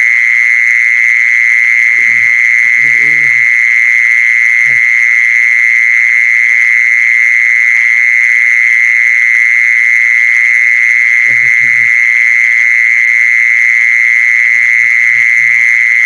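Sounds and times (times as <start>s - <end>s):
low grunt: 2.0s - 3.5s.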